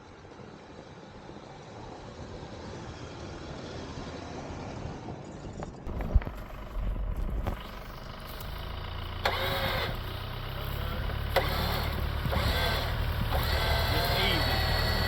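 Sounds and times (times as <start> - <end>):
off-road vehicle engine running: 5.3 - 15.0.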